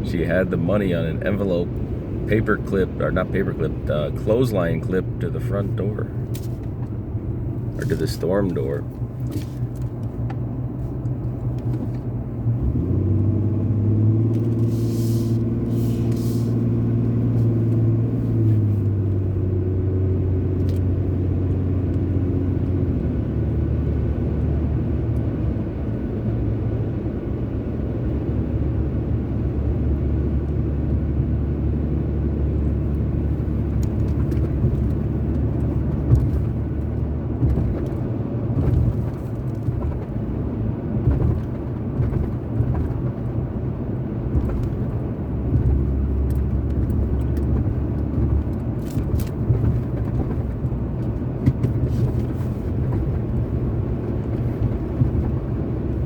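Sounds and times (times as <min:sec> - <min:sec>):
car engine hum: 0:00.0 - 0:56.0
tyre and road rumble: 0:00.0 - 0:56.0.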